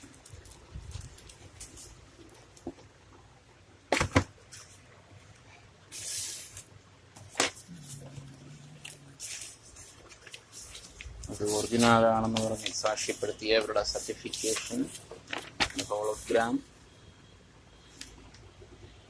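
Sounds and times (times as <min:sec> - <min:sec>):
cardboard or plastic rustle: 0:00.0 - 0:02.7, 0:07.7 - 0:16.6
faint low hum: 0:07.3 - 0:14.1.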